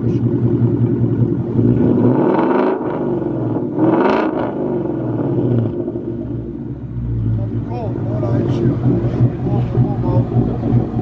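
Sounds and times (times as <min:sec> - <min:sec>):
car engine idling and revving: 0:00.0 - 0:11.0.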